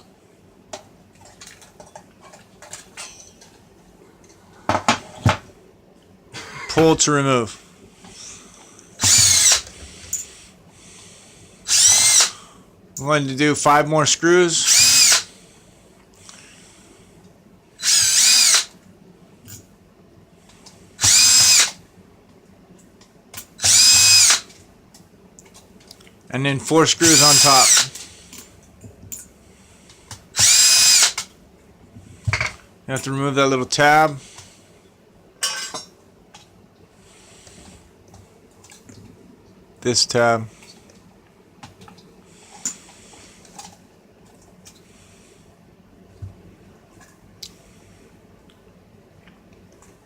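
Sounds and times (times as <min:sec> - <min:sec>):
power driver motor spinning: 0:09.0 - 0:10.4, 0:11.7 - 0:12.4, 0:14.6 - 0:15.3, 0:17.8 - 0:18.7, 0:21.0 - 0:21.8, 0:23.6 - 0:24.5, 0:27.0 - 0:28.0, 0:30.4 - 0:31.3.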